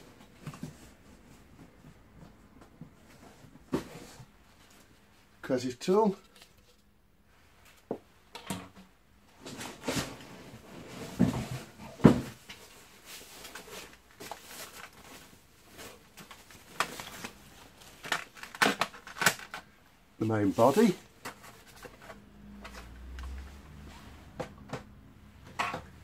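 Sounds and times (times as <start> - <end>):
packaging rustling: 12.6 - 19.8.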